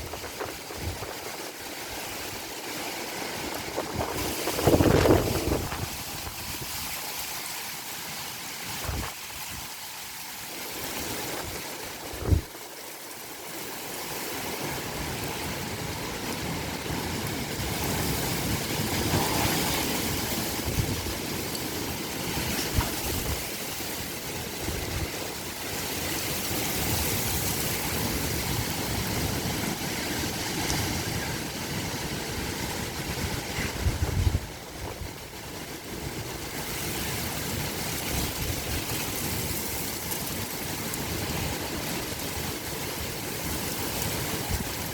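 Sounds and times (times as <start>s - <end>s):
gusty storm wind: 0.0s - 7.3s, 8.5s - 9.8s, 10.6s - 44.9s
wind buffeting microphone: 3.5s - 7.0s, 11.2s - 12.6s, 15.2s - 40.4s.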